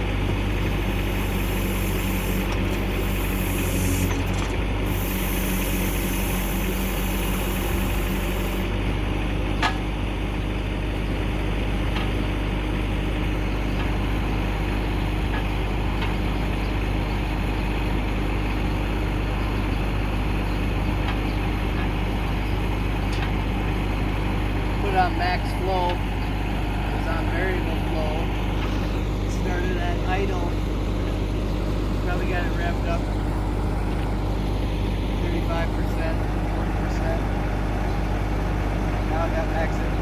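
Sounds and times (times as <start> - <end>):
diesel engine running: 0.0 - 40.0.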